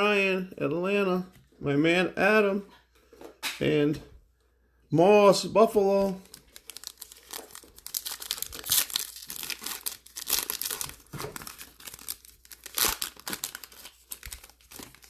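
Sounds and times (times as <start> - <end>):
plastic wrapping crinkling and tearing: 6.1 - 15.0.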